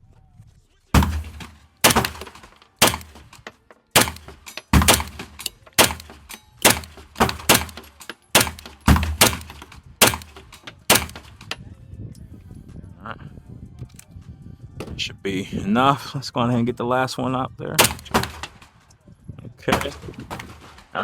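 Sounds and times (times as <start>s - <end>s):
gunshots cracking: 1.0s - 11.6s, 17.8s - 18.7s, 19.7s - 21.0s.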